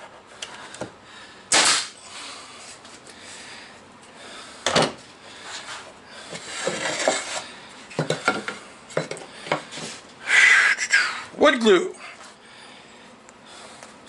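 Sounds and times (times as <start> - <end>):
wood scraping and rubbing: 6.4 - 7.4.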